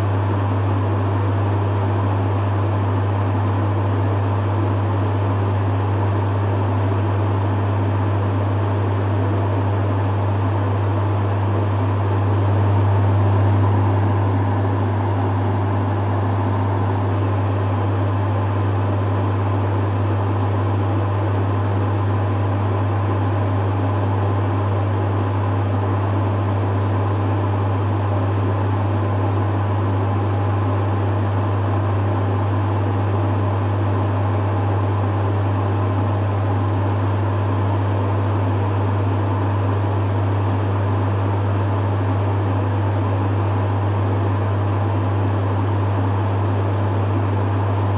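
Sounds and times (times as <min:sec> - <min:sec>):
compressor humming: 0:00.0 - 0:47.9
fan whooshing: 0:10.1 - 0:19.6.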